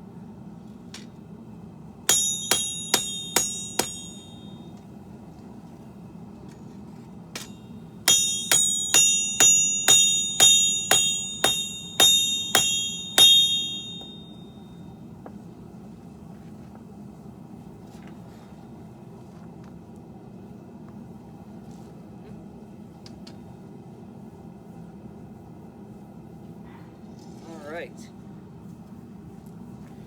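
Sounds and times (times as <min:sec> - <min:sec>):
hammer striking steel on anvil: 0:02.1 - 0:04.7, 0:07.4 - 0:14.5.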